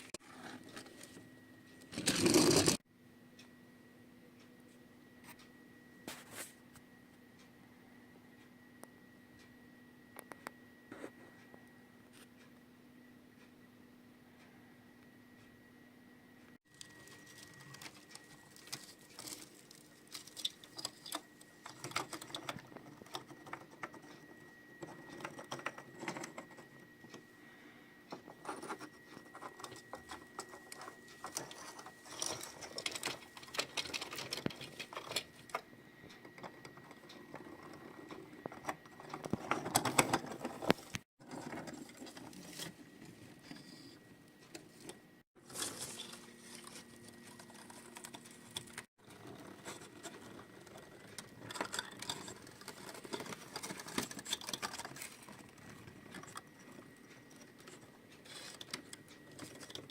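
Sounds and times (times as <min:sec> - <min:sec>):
rustling and scraping: 0:00.0 - 0:02.8, 0:37.0 - 0:59.9
toy models clicking and rattling: 0:01.9 - 0:02.8, 0:16.7 - 0:24.1, 0:28.4 - 0:35.6, 0:45.4 - 0:59.9.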